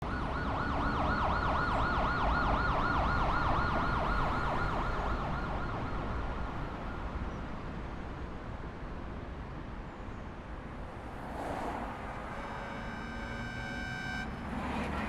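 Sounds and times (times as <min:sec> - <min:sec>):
city traffic rumble: 0:00.0 - 0:15.0
siren yelping: 0:12.2 - 0:15.0.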